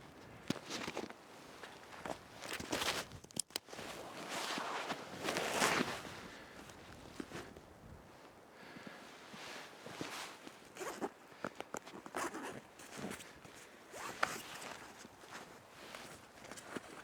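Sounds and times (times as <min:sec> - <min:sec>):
zipper pulled: 0:10.8 - 0:11.2, 0:11.9 - 0:12.6.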